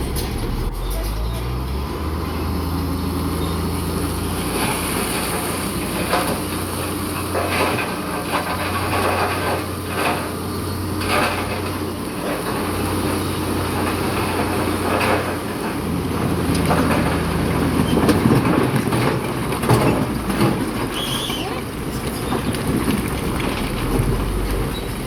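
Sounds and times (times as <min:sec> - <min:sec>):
bulldozer diesel engine running: 0:00.0 - 0:25.0.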